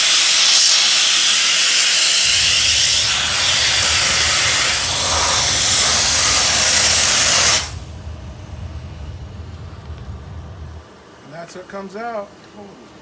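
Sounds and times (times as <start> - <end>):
steam jetting hiss: 0.0 - 9.2.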